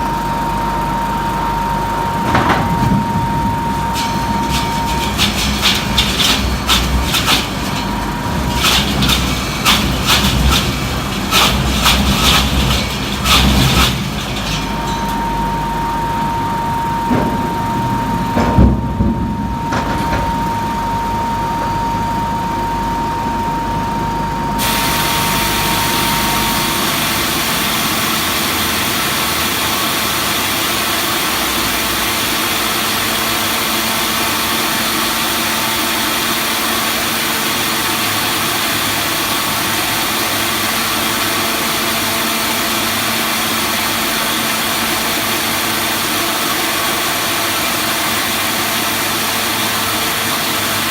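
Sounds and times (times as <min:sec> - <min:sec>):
dense hissing machine noise: 0:00.0 - 0:23.1, 0:23.7 - 0:50.9
machine whine and hum: 0:00.0 - 0:50.9.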